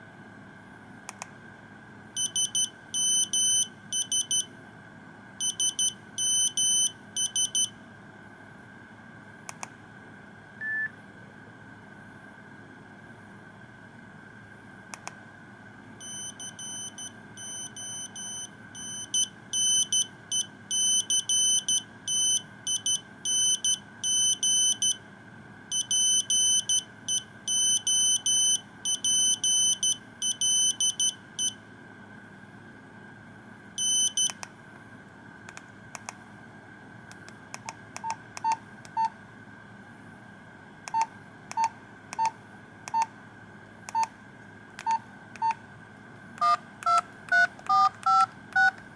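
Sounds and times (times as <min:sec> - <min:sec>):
clicks: 0:01.1 - 0:01.3, 0:09.5 - 0:09.8, 0:14.9 - 0:15.2, 0:34.2 - 0:34.5, 0:35.5 - 0:36.2, 0:37.1 - 0:39.0, 0:40.8 - 0:43.1, 0:43.8 - 0:48.9
monophonic ringtone beeps: 0:46.4 - 0:48.7.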